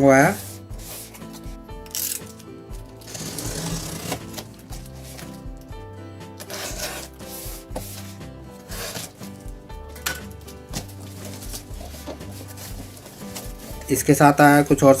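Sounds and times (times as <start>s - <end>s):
background music with bass line: 0.0s - 15.0s
parcel rustling: 10.7s - 14.0s.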